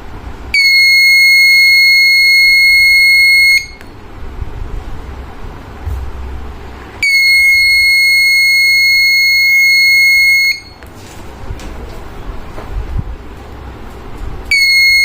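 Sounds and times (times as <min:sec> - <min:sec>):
high-pitched alarm buzzer: 0:00.6 - 0:03.8, 0:07.0 - 0:10.8, 0:14.5 - 0:15.0.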